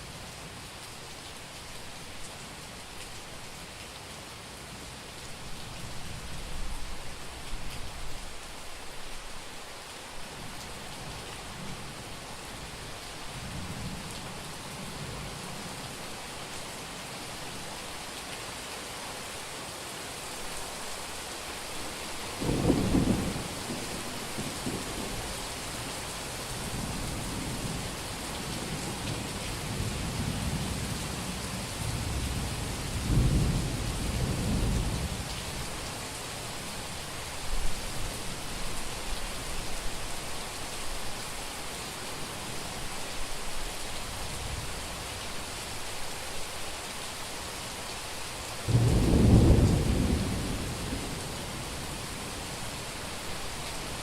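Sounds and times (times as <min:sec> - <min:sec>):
heavy rain falling: 0:00.0 - 0:54.0
thunder rumbling: 0:48.7 - 0:51.2.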